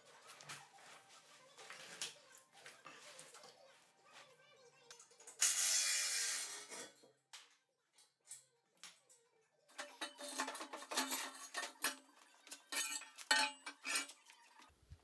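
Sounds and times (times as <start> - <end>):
metallic clinking and clattering: 9.8 - 14.5.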